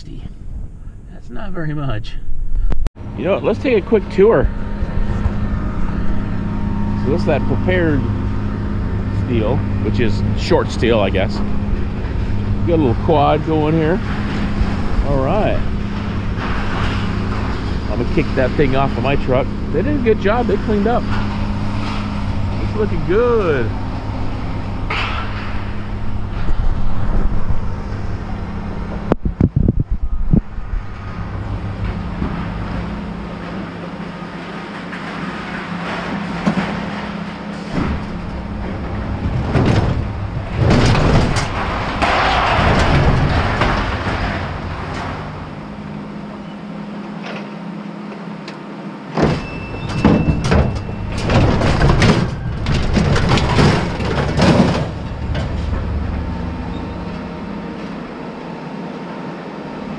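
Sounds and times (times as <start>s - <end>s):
vehicle engine idling: 2.1s - 29.2s
clattering scraping noise: 34.4s - 45.4s, 49.3s - 56.3s.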